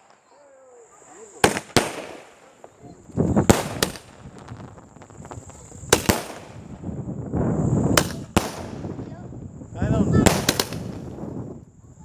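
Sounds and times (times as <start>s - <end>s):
firecrackers bursting: 0.0s - 11.7s
rumbling noise: 2.7s - 11.6s.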